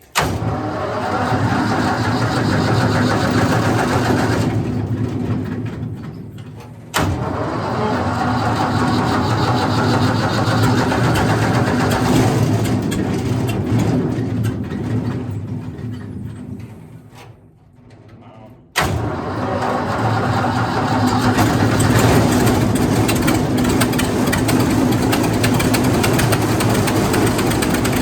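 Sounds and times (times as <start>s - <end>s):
engine starting with sharp pop: 0.0s - 5.8s, 6.9s - 15.2s, 18.8s - 28.0s
gasoline engine running: 0.4s - 5.4s, 6.9s - 14.0s, 18.8s - 28.0s.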